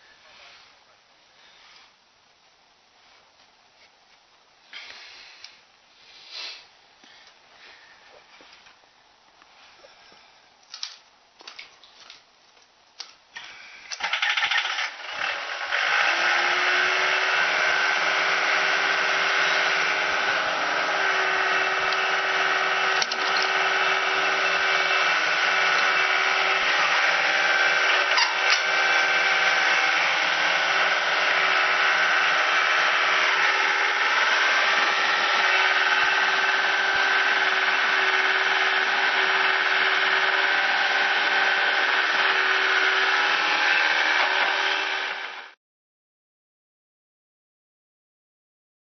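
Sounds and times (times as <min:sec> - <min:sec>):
motor-driven machine whining: 0:14.0 - 0:45.6.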